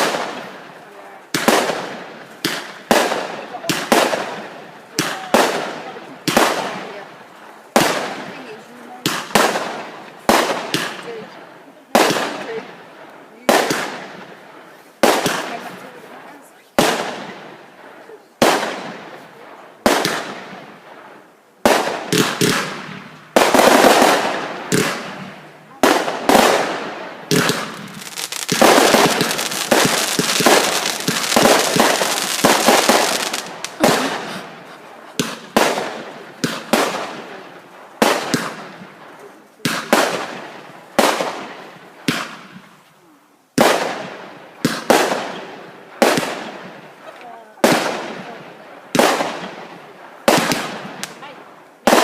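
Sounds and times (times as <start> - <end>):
fireworks bangs: 0.0 - 52.0
rapid crackling bangs: 21.7 - 42.7.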